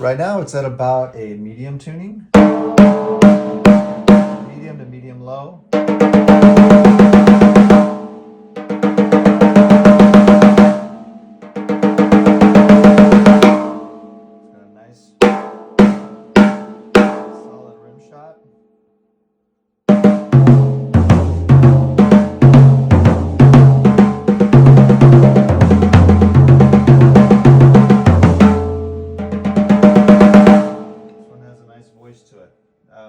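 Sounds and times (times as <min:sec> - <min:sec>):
drum beat: 0:02.3 - 0:04.9, 0:05.7 - 0:14.0, 0:15.2 - 0:17.6, 0:19.9 - 0:31.2
snare drum rolls and strokes: 0:02.4 - 0:04.8, 0:05.8 - 0:13.8, 0:19.9 - 0:31.2.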